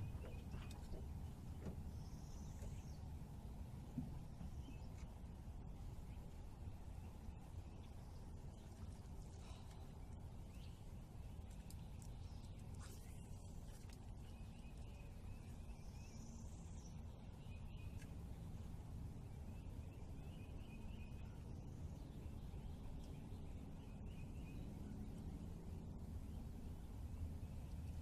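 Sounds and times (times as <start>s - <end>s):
low background rumble: 0.0s - 28.0s
small birds chirping: 6.0s - 28.0s.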